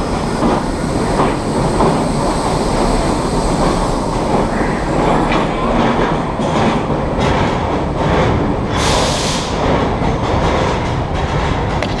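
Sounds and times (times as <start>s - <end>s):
subway cars gears growling: 0.0s - 12.0s
loud hiss: 8.7s - 9.6s.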